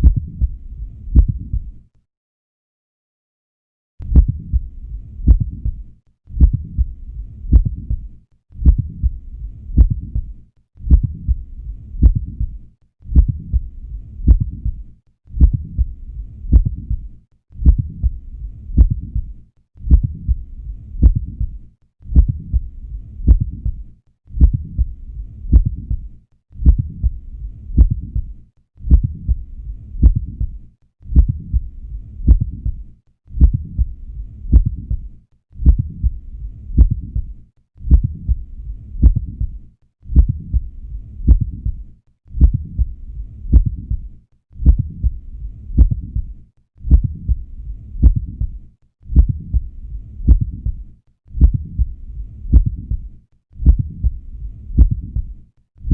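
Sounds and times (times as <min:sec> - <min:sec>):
heartbeat knocks with click: 0:00.0 - 0:00.6, 0:01.2 - 0:01.7, 0:04.0 - 0:04.7, 0:05.3 - 0:05.8, 0:06.4 - 0:06.9, 0:07.5 - 0:08.0, 0:08.6 - 0:09.2, 0:09.8 - 0:10.3, 0:10.9 - 0:11.4, 0:12.0 - 0:13.7, 0:14.3 - 0:14.8, 0:15.4 - 0:18.2, 0:18.8 - 0:19.3, 0:19.9 - 0:20.4, 0:21.0 - 0:22.7, 0:23.3 - 0:23.8, 0:24.4 - 0:24.9, 0:25.5 - 0:26.0, 0:26.6 - 0:27.2, 0:27.8 - 0:28.3, 0:28.9 - 0:29.4, 0:30.0 - 0:31.7, 0:32.3 - 0:32.8, 0:33.4 - 0:33.9, 0:34.5 - 0:35.0, 0:35.6 - 0:36.2, 0:36.8 - 0:38.4, 0:39.0 - 0:39.6, 0:40.2 - 0:40.7, 0:41.3 - 0:41.8, 0:42.4 - 0:42.9, 0:43.5 - 0:44.0, 0:44.6 - 0:45.2, 0:45.8 - 0:46.3, 0:46.9 - 0:47.4, 0:48.0 - 0:49.7, 0:50.3 - 0:50.8, 0:51.4 - 0:51.9, 0:52.5 - 0:53.0, 0:53.6 - 0:54.2, 0:54.8 - 0:55.3.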